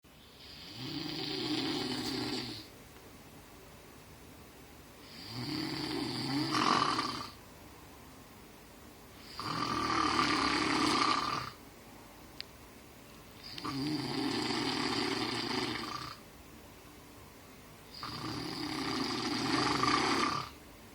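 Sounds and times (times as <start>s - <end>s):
quiet breathing: 0.1s - 2.7s
long snores: 0.3s - 2.7s, 5.0s - 7.4s, 9.2s - 11.6s, 13.4s - 16.2s, 17.9s - 20.6s.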